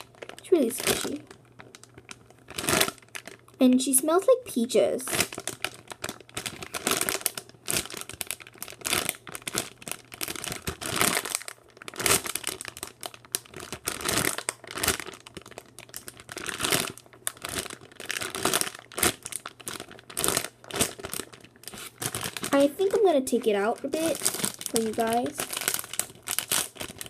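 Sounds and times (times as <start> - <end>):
plastic packaging crinkling: 0.0 - 27.0.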